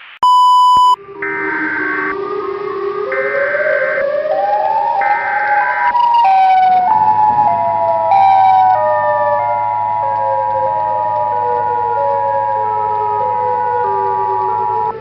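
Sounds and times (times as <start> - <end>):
steady tone: 0.0 - 15.0
short high beeps: 0.2 - 1.0
rising alarm tone: 0.2 - 15.0
stepped falling alarm tone: 0.2 - 15.0
low hum: 6.8 - 15.0.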